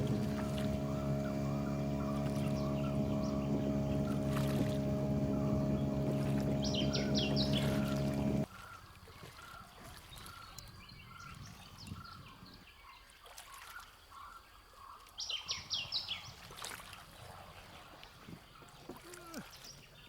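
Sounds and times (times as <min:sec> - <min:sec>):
faint water trickling: 0:00.0 - 0:10.6.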